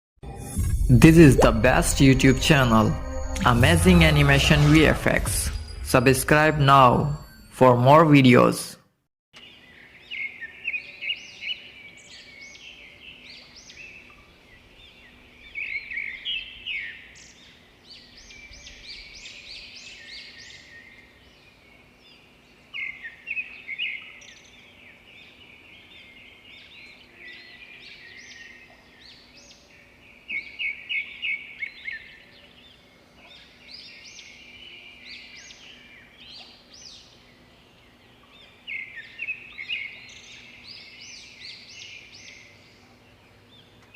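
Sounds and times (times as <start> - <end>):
birds chirping and trilling: 9.4 - 43.9.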